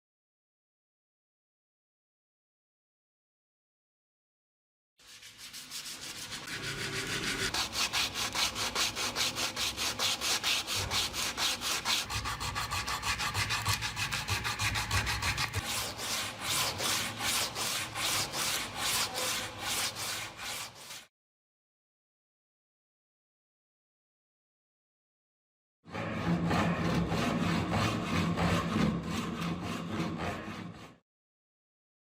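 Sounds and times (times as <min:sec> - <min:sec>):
hand-sanding wood: 0:05.0 - 0:21.1, 0:26.5 - 0:31.0.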